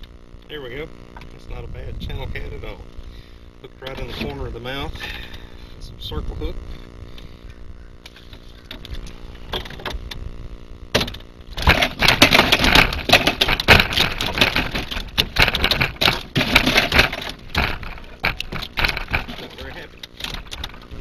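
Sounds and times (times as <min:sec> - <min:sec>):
faint motor hum: 0:00.0 - 0:21.0
fish thrashing and rattling: 0:11.0 - 0:21.0.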